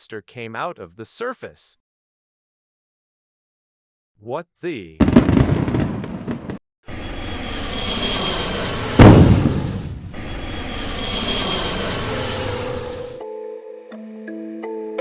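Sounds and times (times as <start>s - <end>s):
loud explosion: 5.0s - 6.6s, 9.0s - 10.2s.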